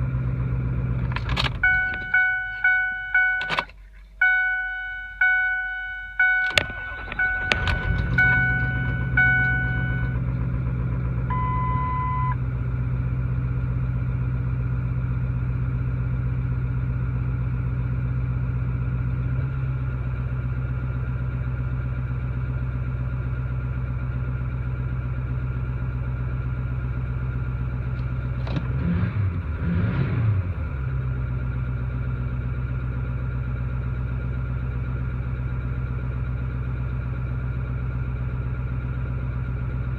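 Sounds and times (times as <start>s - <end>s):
diesel engine starting and idling: 0.0s - 39.9s
beep: 1.6s - 3.6s, 4.2s - 10.2s, 11.3s - 12.4s
dashboard chimes: 1.6s - 3.6s, 4.2s - 10.2s.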